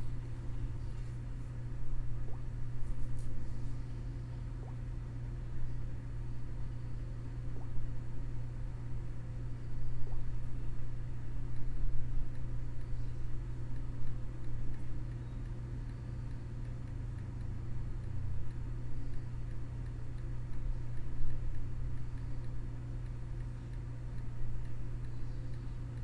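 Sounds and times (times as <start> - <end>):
low room hum: 0.0 - 26.0
faint ticking: 11.5 - 26.0.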